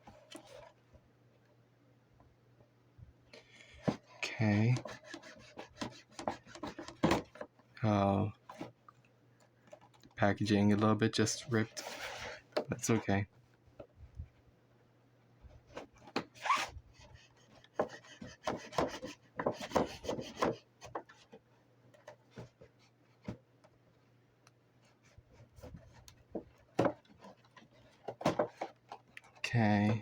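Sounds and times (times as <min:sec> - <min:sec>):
cardboard and plastic scraping: 0:00.0 - 0:00.8, 0:03.7 - 0:07.6, 0:08.3 - 0:08.8, 0:09.7 - 0:13.2, 0:25.0 - 0:30.0.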